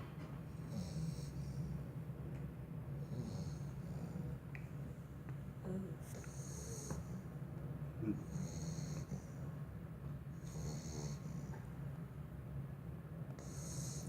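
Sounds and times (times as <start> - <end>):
puppy snoring: 0.5 - 1.8, 3.0 - 4.5, 5.6 - 7.3, 8.0 - 9.6, 10.3 - 11.7, 13.3 - 14.0.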